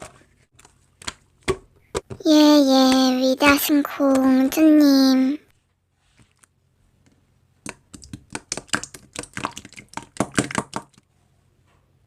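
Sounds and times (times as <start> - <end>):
slime squished by hand: 7.6 - 11.0.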